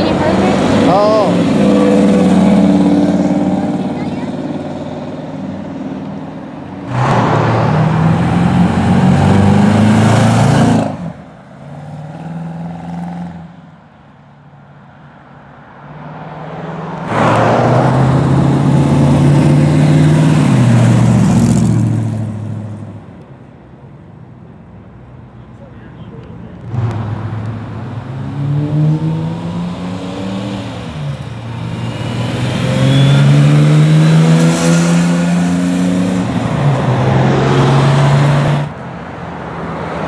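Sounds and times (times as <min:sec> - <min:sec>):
sports cars accelerating hard: 0:06.8 - 0:13.5, 0:15.9 - 0:22.7, 0:26.6 - 0:38.7.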